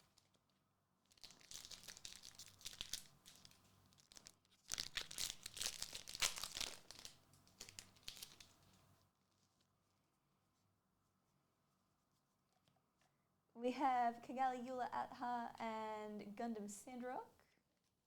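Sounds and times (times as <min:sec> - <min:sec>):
wrapper crinkling and tearing: 0:01.0 - 0:08.8.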